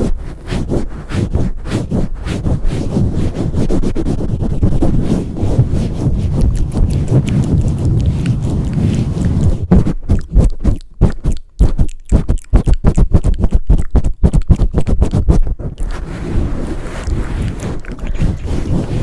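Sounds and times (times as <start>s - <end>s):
rubbing over microphone: 0.0s - 19.0s
muffled thumps on microphone: 4.3s - 15.8s.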